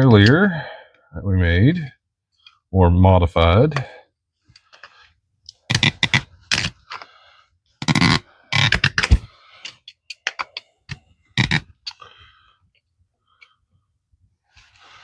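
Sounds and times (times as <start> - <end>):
plastic scraping on pipe: 5.5 - 7.1, 7.8 - 9.4, 11.4 - 12.0.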